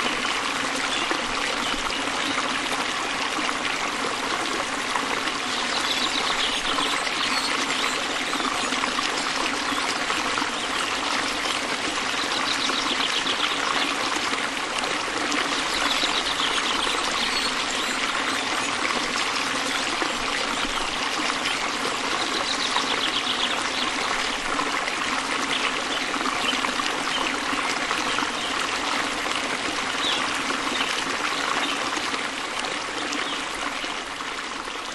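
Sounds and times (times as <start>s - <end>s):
stream of water trickling: 0.0s - 34.9s.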